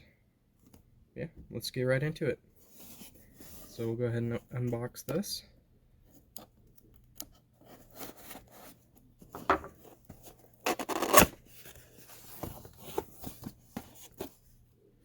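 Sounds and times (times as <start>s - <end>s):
cardboard box clicks and rustling: 10.2s - 14.3s.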